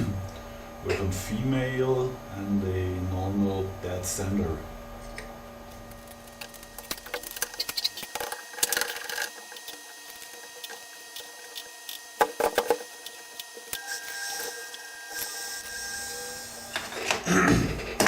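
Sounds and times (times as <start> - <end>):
faint steady hum: 0.0 - 18.0
metal parts clicking and knocking: 6.2 - 13.8.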